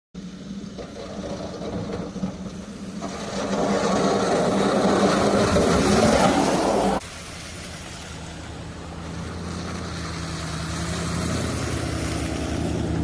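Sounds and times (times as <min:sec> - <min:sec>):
loud rushing noise: 0:02.6 - 0:13.0.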